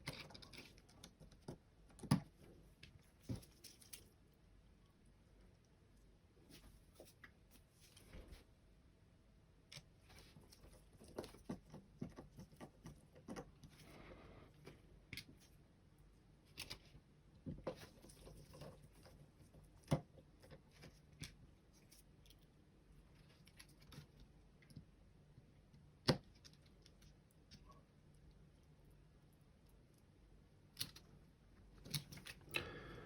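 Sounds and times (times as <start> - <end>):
soft rustle: 5.5 - 8.6.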